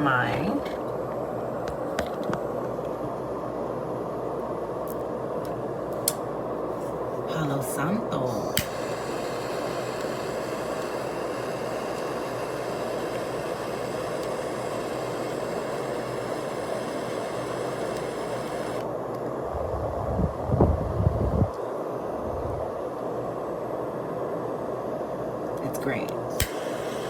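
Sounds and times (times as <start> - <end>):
butane torch hissing: 8.3 - 18.9, 25.7 - 27.0.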